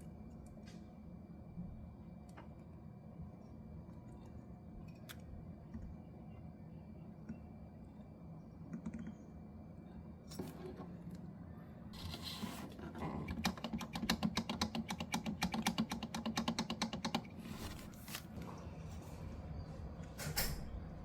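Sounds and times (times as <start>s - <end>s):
rapid mechanical clicks: 13.3s - 17.3s.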